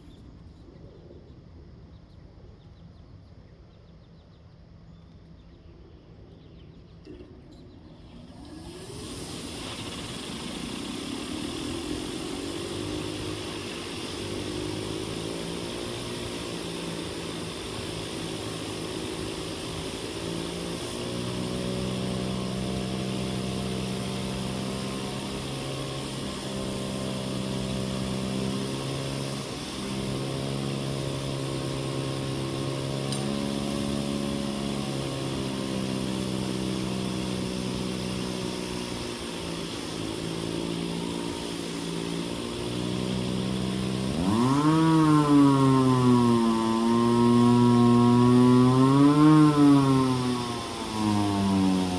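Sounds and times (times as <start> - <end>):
blower running: 0.0 - 0.4, 6.5 - 51.9.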